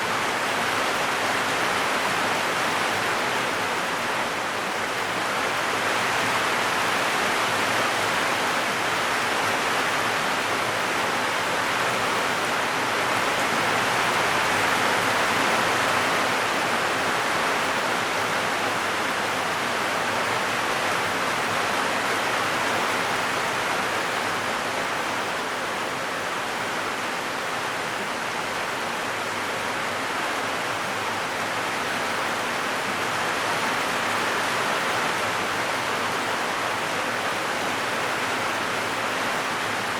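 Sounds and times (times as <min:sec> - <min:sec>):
heavy rain on a metal roof: 0:00.0 - 0:39.9.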